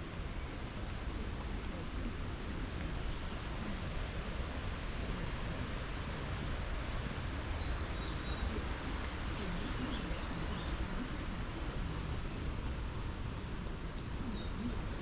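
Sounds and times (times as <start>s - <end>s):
outdoor background noise: 0.0s - 15.0s
faint bird chirps and whistles: 14.0s - 15.0s.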